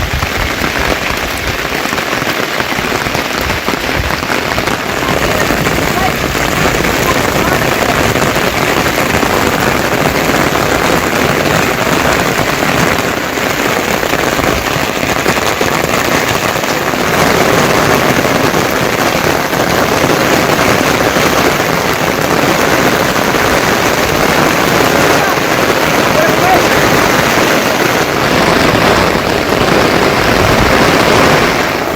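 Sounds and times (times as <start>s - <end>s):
heavy rain: 0.0s - 31.9s.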